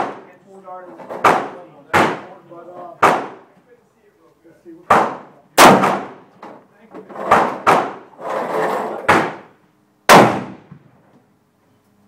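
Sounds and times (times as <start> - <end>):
rifle shots: 3.0 - 3.4, 4.9 - 6.2, 7.3 - 8.0, 9.1 - 9.5, 10.1 - 10.8.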